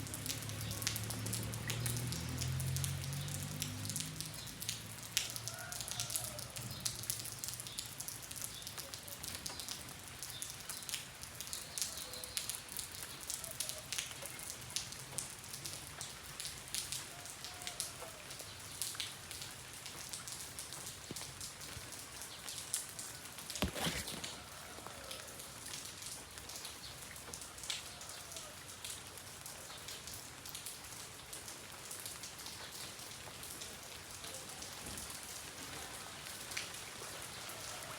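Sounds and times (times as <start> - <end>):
rain falling steadily: 0.0 - 37.9.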